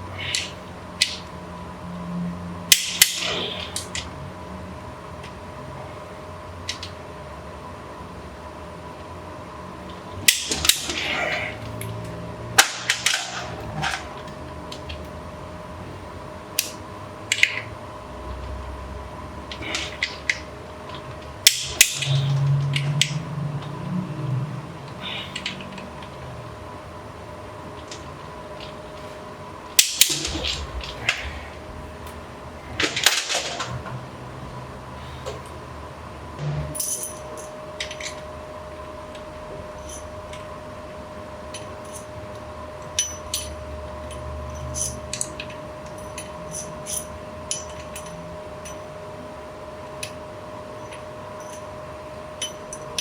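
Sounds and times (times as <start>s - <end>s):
faint steady hum: 0.0s - 53.0s
metal parts clicking and clattering: 10.3s - 12.0s, 12.6s - 15.0s, 19.5s - 23.2s, 25.0s - 26.2s, 29.8s - 33.9s, 36.7s - 38.3s, 39.8s - 40.4s, 42.9s - 48.9s, 50.8s - 51.7s, 52.4s - 53.0s
metal tools clanking: 29.8s - 31.6s, 43.0s - 48.8s.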